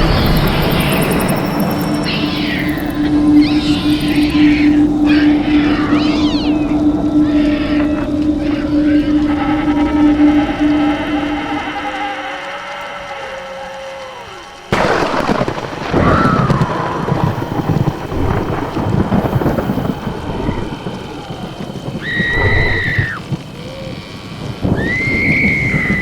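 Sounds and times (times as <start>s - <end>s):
thunderclap: 0.0s - 13.2s, 14.5s - 26.0s
rolling thunder: 0.0s - 13.3s, 14.5s - 26.0s
steady rain: 0.0s - 26.0s
high drawn-out cry: 1.8s - 14.7s.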